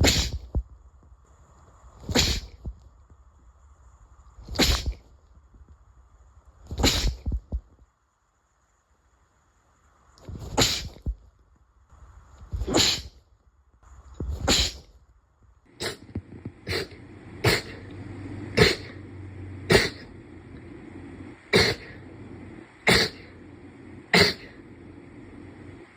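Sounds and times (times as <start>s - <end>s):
person sneezing: 0.0s - 0.6s, 2.0s - 2.6s, 4.5s - 5.0s, 6.7s - 7.4s, 10.4s - 11.1s, 12.6s - 13.2s, 14.3s - 14.9s, 15.8s - 17.9s, 18.5s - 19.0s, 19.7s - 20.1s, 21.5s - 22.0s, 22.8s - 23.4s, 24.1s - 24.6s.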